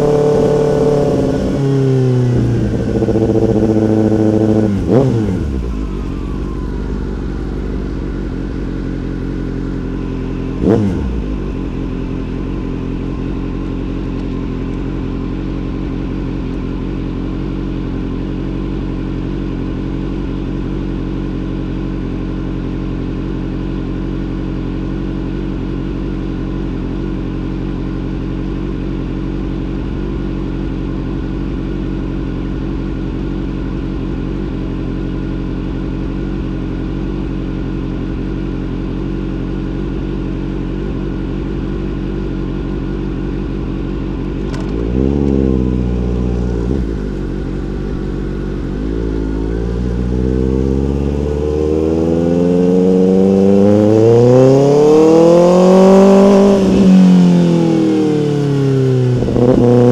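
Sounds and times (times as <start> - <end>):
motorcycle throttle rev: 0.0 - 16.6, 43.0 - 59.9
motorcycle engine running: 0.0 - 59.9.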